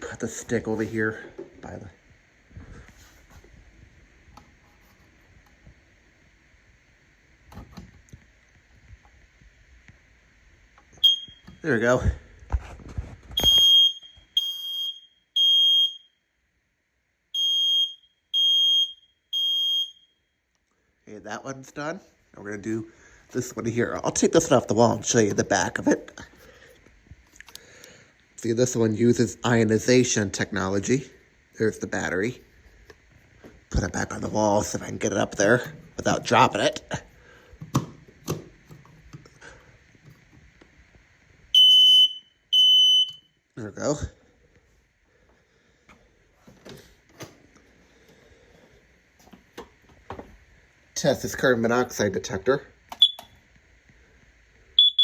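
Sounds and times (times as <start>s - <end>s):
smoke alarm beeping: 11.0s - 11.7s, 13.4s - 16.2s, 17.3s - 20.3s, 41.5s - 43.4s, 52.9s - 53.4s, 54.8s - 55.0s.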